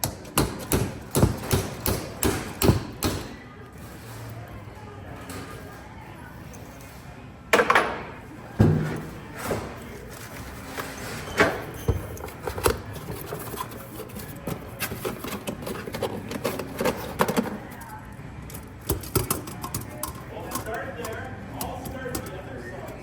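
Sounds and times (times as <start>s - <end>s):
objects being handled: 8.6s - 23.0s.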